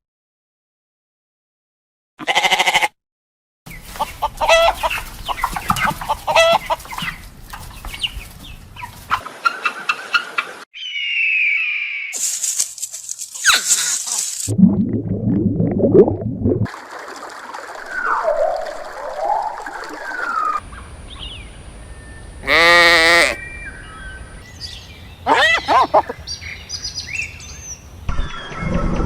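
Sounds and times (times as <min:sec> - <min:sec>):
quavering bleat: 0:02.2 - 0:03.0, 0:22.4 - 0:23.4
animal calls: 0:25.2 - 0:26.3.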